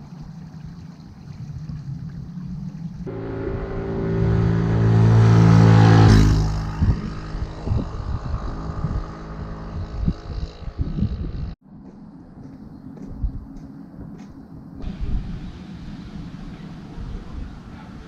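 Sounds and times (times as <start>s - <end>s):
vehicle engine passing: 3.0s - 11.6s.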